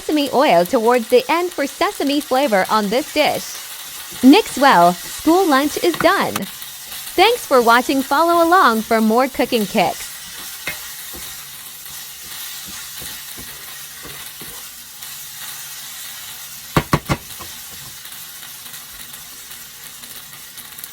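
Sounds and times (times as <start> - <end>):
noodles sizzling in a pan: 0.0 - 20.9
spatula knocking pan: 3.9 - 6.6, 9.3 - 14.6, 16.7 - 17.9
utensil clanking against pan: 10.2 - 11.4, 12.2 - 14.6, 16.8 - 17.9.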